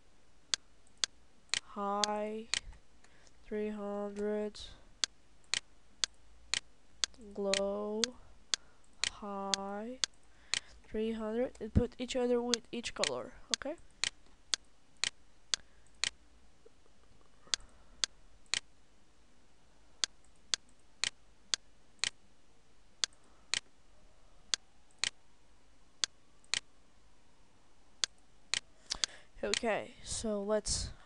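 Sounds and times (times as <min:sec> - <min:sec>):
computer mouse clicking: 0:05.0 - 0:10.7, 0:17.5 - 0:18.7, 0:23.0 - 0:23.7, 0:26.0 - 0:26.7, 0:28.0 - 0:29.7.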